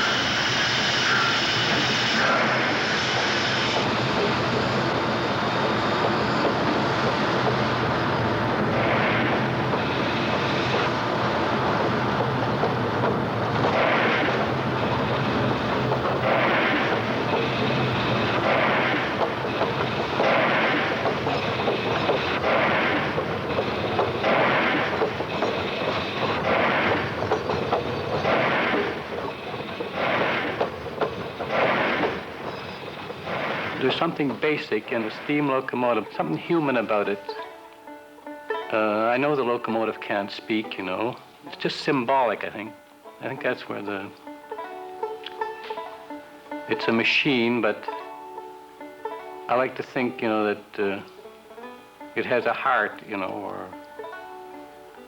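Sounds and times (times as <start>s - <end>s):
steam hissing bursts: 0.0s - 37.4s
train rumbling: 0.0s - 55.0s.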